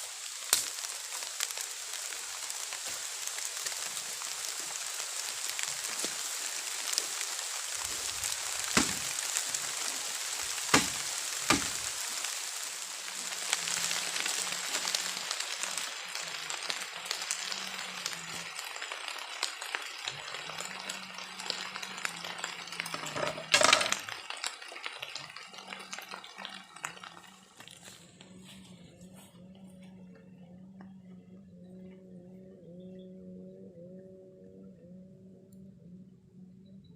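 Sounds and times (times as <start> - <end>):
rain falling: 0.0 - 29.3
sharp knocks: 10.7 - 11.8.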